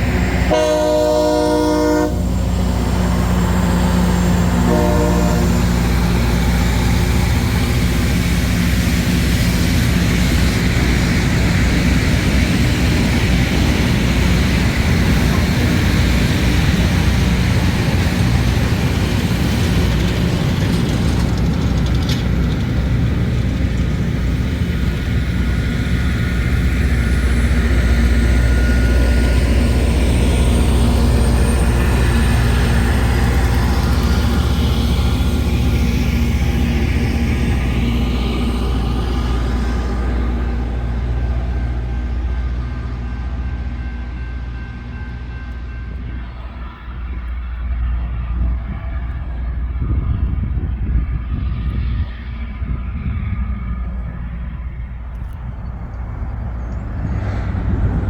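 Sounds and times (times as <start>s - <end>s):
train diesel rumble: 0.0s - 58.0s.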